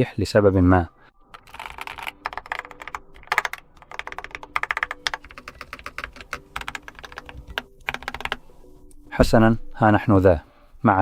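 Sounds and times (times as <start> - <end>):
keyboard typing: 1.3 - 8.7.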